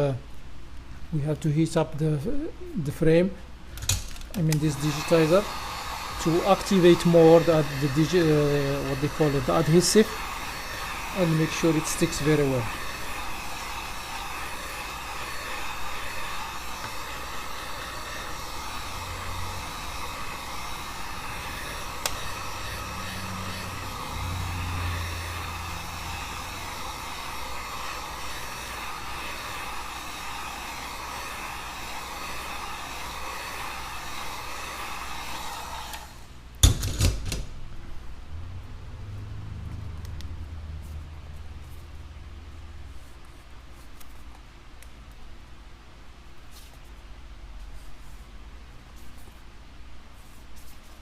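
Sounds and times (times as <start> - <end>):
hot-air blower running: 3.8 - 38.4.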